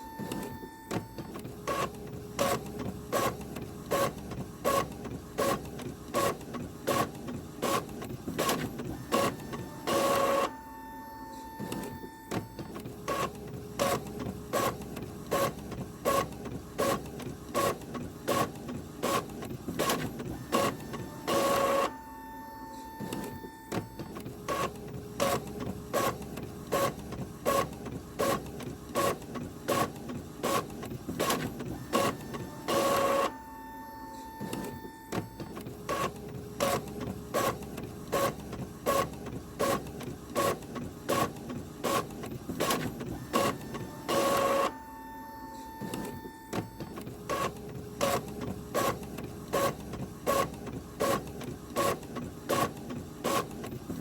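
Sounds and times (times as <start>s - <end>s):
printer steady hum: 0.0s - 54.0s
printer mechanical clicks: 0.1s - 10.6s, 11.4s - 22.0s, 22.7s - 33.4s, 34.0s - 54.0s
printer loud stroke: 8.4s - 12.4s, 19.0s - 23.6s, 30.4s - 39.8s, 40.4s - 52.7s.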